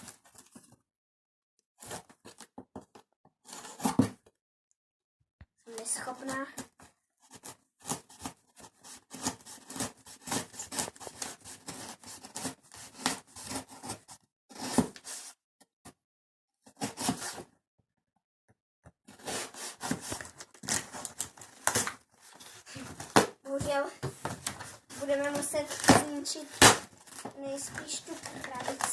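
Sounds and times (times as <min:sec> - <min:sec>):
cardboard rasping and scraping: 0:01.8 - 0:02.5, 0:03.4 - 0:04.2, 0:07.2 - 0:15.4, 0:16.7 - 0:17.5, 0:19.1 - 0:28.9.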